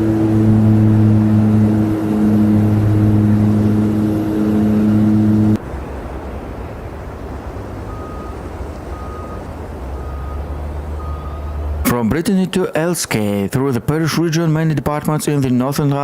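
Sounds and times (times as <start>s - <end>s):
vehicle engine humming: 0.0s - 12.7s
reversing alarm beep: 7.9s - 9.4s, 10.0s - 11.6s.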